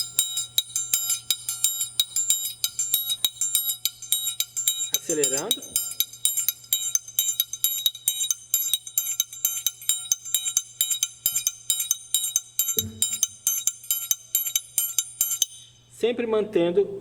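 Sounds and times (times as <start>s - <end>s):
triangle strikes: 0.0s - 15.8s.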